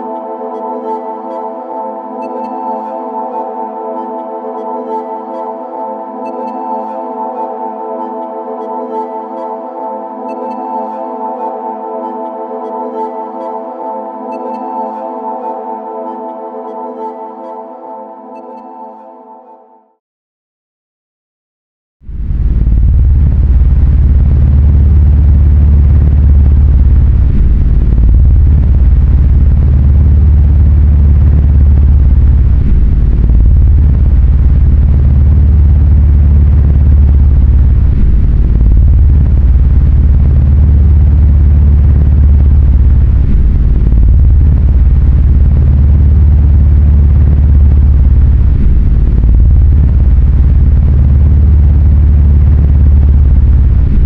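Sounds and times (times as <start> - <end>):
deep droning rumble: 22.1 - 54.0.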